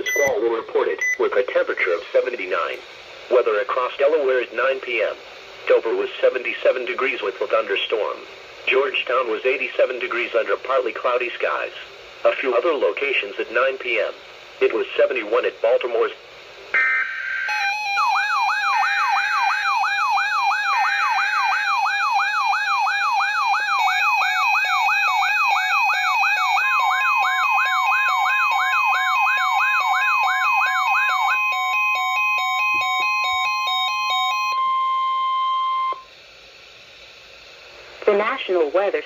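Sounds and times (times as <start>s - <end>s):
steady warning tone: 0.0s - 2.8s, 16.8s - 36.2s
wailing siren-like alarm: 16.8s - 36.0s.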